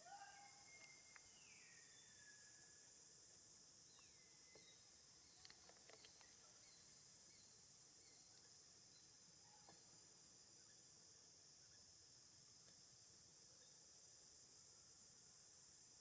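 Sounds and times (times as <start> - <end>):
high insect drone: 0.0 - 16.0.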